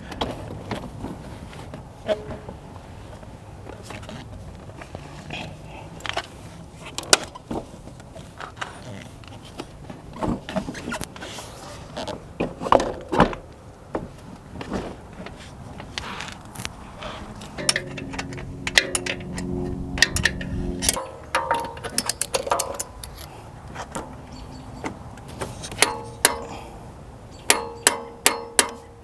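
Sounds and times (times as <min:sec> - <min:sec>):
sharp metallic clicks: 0:17.4 - 0:26.6, 0:27.3 - 0:29.0
metal tools clinking and clanking: 0:17.4 - 0:29.0
power tool running: 0:17.6 - 0:21.3.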